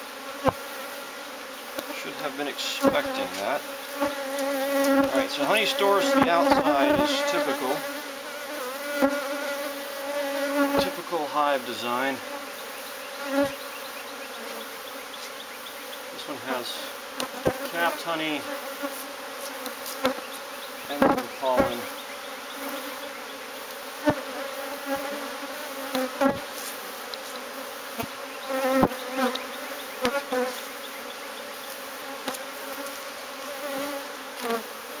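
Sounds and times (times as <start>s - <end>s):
bee colony buzzing: 0.0s - 35.0s
bees flying past: 0.0s - 35.0s.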